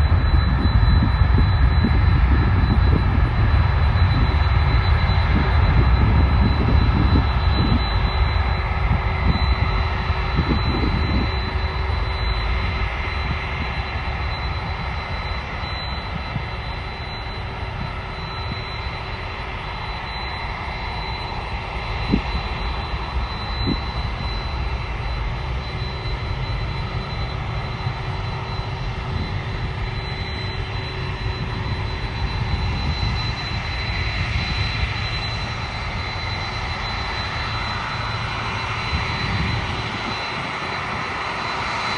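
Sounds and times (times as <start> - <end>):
high engine whine: 0.0 - 41.9
jet engines rumbling: 0.0 - 41.9.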